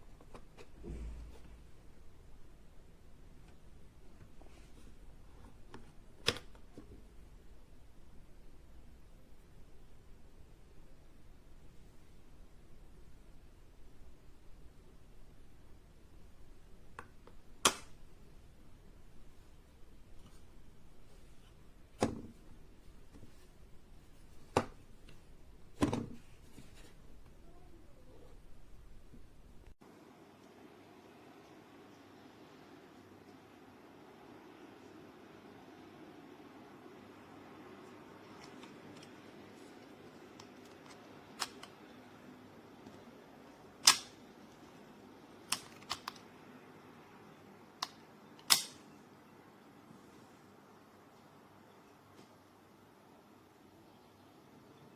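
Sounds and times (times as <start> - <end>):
faint room hiss: 0.0 - 54.9
sharp clicks: 43.8 - 44.2, 47.8 - 48.8.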